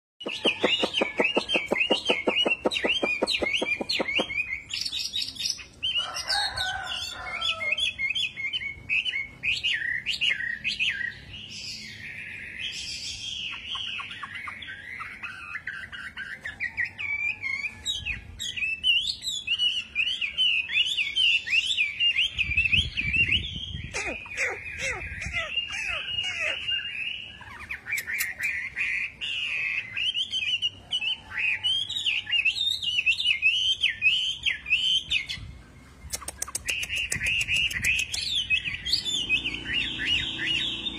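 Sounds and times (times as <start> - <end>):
songbird singing: 0.2 - 40.9.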